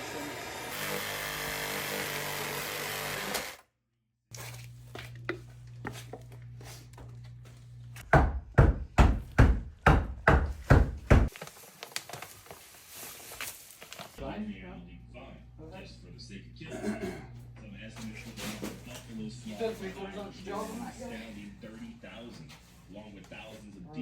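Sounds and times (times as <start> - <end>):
heavy knocks: 8.0 - 11.3.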